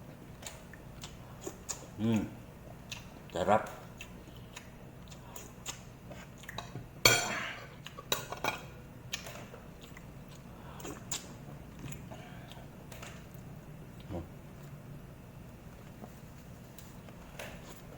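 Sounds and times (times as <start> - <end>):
chewing: 0.3 - 6.8, 9.1 - 14.8
cutlery clinking against dishes: 7.0 - 8.7.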